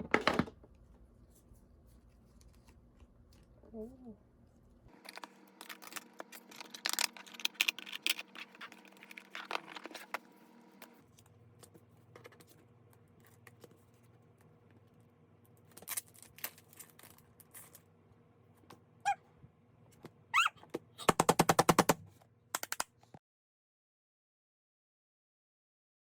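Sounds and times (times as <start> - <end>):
packaging crinkling and rustling: 4.9 - 10.3.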